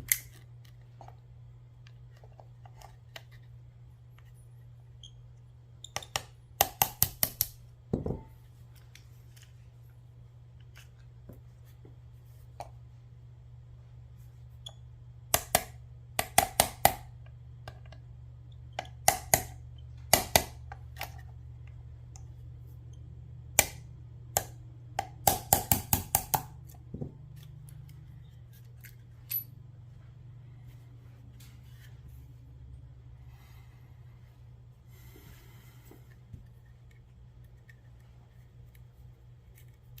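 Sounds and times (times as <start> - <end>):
pistol parts clicking and clacking: 0.0 - 1.2, 27.4 - 29.5.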